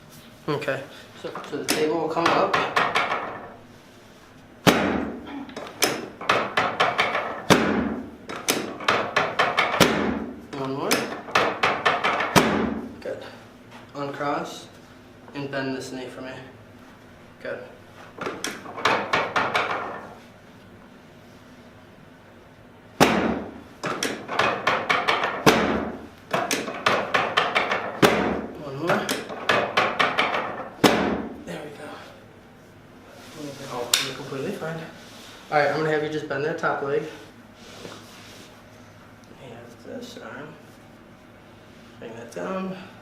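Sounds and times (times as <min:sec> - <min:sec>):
treatment table clacking: 0:01.3 - 0:03.6, 0:04.7 - 0:12.8, 0:18.2 - 0:20.2, 0:23.0 - 0:31.3
sharp knocks: 0:01.7 - 0:03.5, 0:04.6 - 0:10.3, 0:10.9 - 0:12.9, 0:18.2 - 0:20.2, 0:23.0 - 0:31.4.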